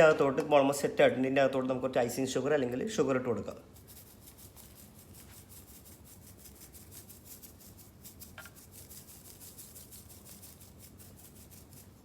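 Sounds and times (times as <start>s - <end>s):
sugar rustling among candies: 3.8s - 12.0s.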